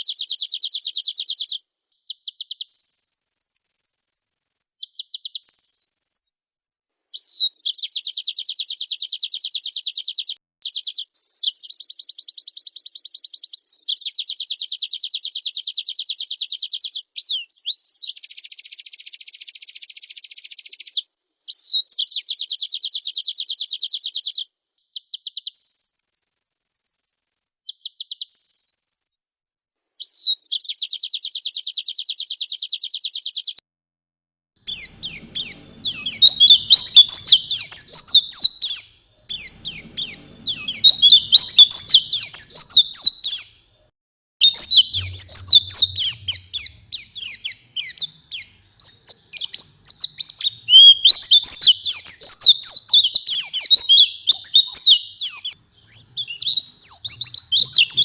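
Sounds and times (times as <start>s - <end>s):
bird fast twittering song: 0.0s - 6.3s, 7.2s - 21.0s, 25.0s - 29.2s, 34.7s - 43.6s, 44.4s - 58.0s
bird trilling: 2.7s - 4.6s, 5.4s - 6.3s, 25.6s - 27.5s, 28.3s - 29.2s, 34.7s - 43.6s, 44.4s - 58.0s.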